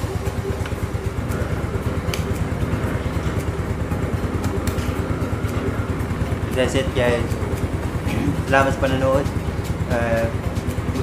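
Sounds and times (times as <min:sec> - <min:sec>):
scooter engine idling: 0:00.0 - 0:11.0.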